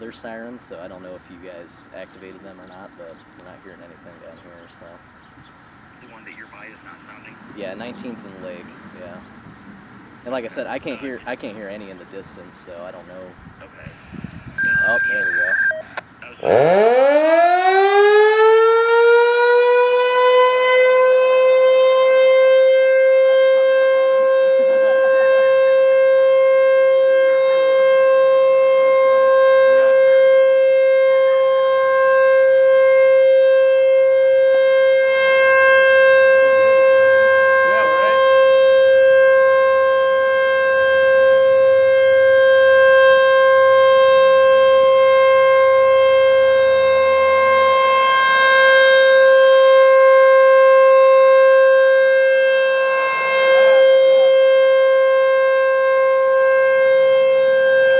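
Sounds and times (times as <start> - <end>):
outdoor warning siren rising tone: 14.0 - 57.9.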